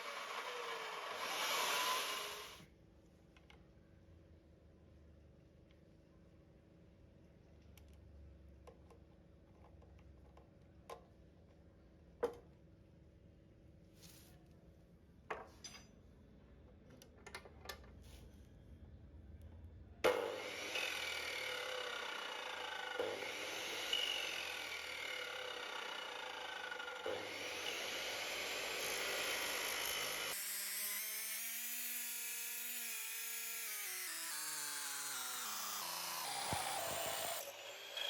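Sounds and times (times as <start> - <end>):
power cutter sawing wood: 0.0 - 2.6, 20.1 - 38.0.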